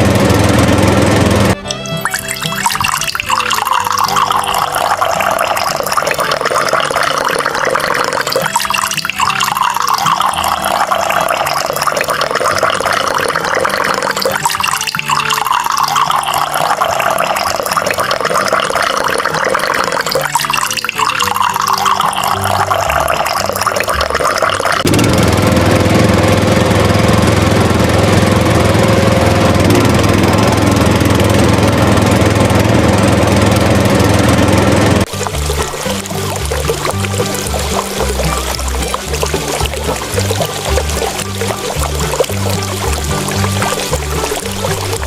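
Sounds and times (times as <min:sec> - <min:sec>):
running water: 0:01.5 - 0:25.0, 0:35.0 - 0:45.0.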